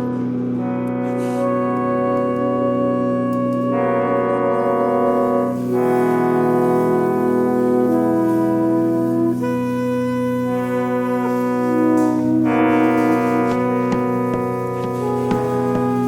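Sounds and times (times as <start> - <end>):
slow music with held chords: 0.0 - 16.0.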